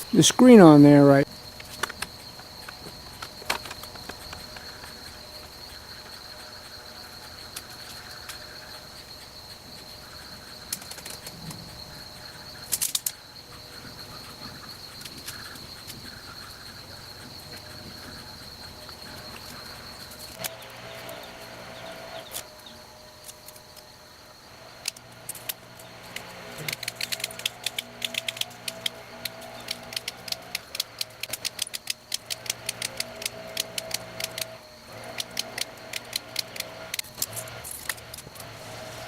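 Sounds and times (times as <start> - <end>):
high-pitched insect drone: 0.0 - 39.0
sharp clicks: 24.8 - 38.5.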